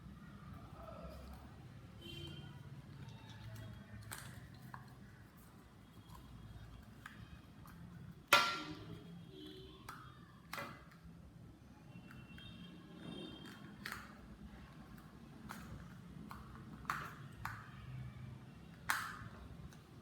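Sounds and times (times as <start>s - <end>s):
plastic snapping: 13.4s - 14.3s, 14.9s - 17.8s, 18.7s - 19.9s.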